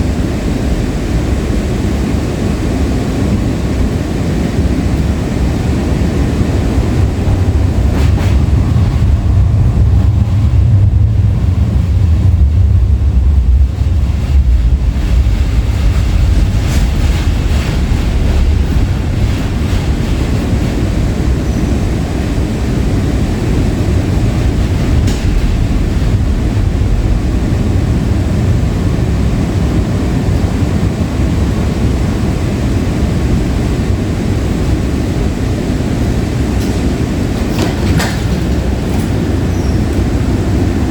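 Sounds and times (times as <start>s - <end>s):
light rail car rumbling on rails: 0.0s - 40.9s.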